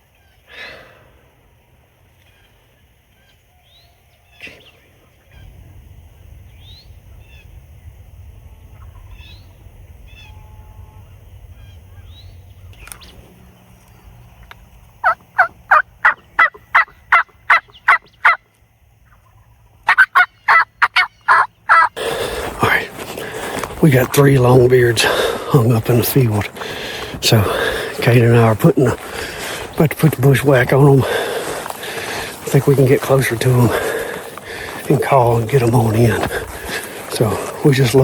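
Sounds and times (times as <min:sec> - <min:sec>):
turkey calling: 0:15.0 - 0:18.4, 0:19.1 - 0:38.0.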